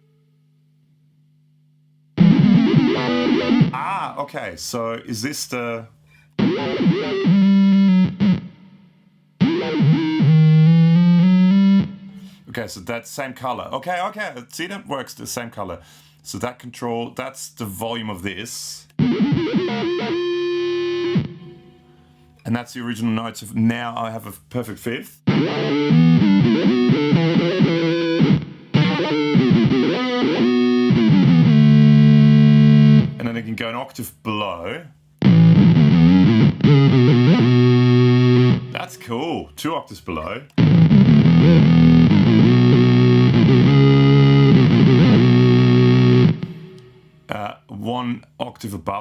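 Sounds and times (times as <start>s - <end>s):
electric guitar with buzzy tone: 2.2s - 3.8s, 6.1s - 12.4s, 18.9s - 22.4s, 25.2s - 33.2s, 35.2s - 39.0s, 40.2s - 47.3s.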